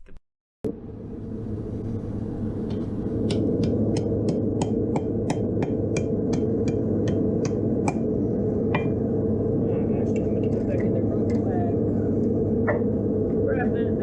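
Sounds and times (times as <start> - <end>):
low rumble: 0.0 - 14.0
hammer striking steel on anvil: 3.3 - 8.0.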